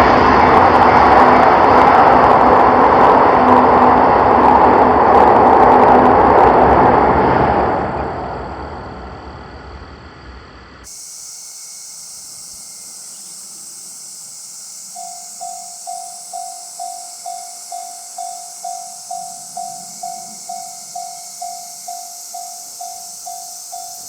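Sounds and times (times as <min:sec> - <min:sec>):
train rumbling past: 0:00.0 - 0:10.9, 0:15.0 - 0:24.0
steady high hiss: 0:09.6 - 0:24.0.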